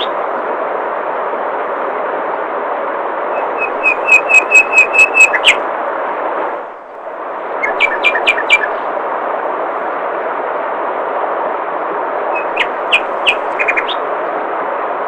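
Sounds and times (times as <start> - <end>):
songbird whistling: 3.3 - 5.6, 7.6 - 8.8, 12.3 - 14.0.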